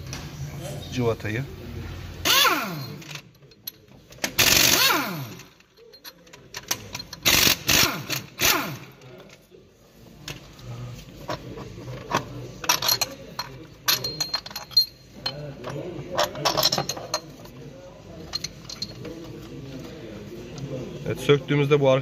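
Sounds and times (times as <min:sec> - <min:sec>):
impact wrench bursts: 0:02.2 - 0:03.3, 0:04.2 - 0:05.6, 0:07.0 - 0:09.1
bolts and tools clicking: 0:02.2 - 0:09.4, 0:11.3 - 0:17.6, 0:18.2 - 0:19.9.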